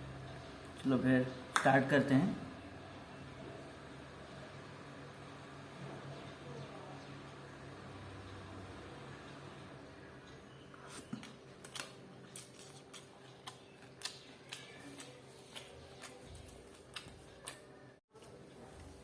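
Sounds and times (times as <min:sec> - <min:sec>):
chewing with wet mouth clicks: 0:11.1 - 0:17.7.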